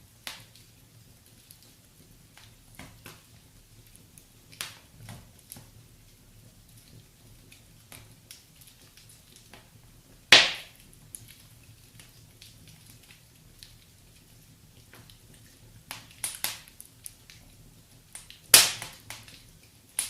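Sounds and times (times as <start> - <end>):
wood fire crackling: 0.0 - 20.0.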